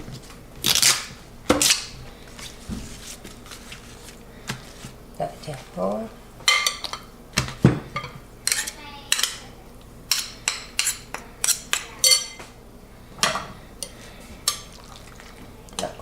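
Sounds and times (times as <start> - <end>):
utensil clinking against a dish: 8.0 - 9.5, 10.1 - 12.5.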